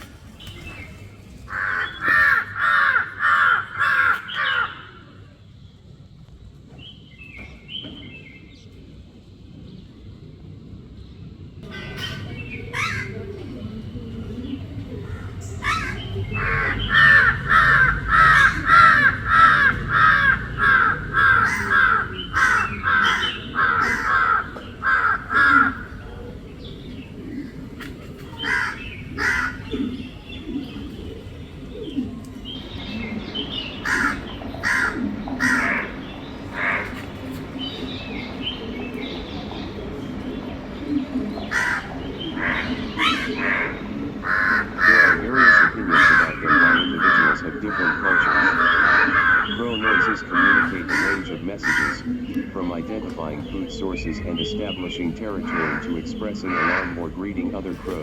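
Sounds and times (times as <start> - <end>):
crows cawing: 1.5 - 5.2, 11.6 - 13.3, 15.0 - 26.3, 27.3 - 30.0, 33.7 - 37.1, 41.4 - 52.7, 55.2 - 57.6.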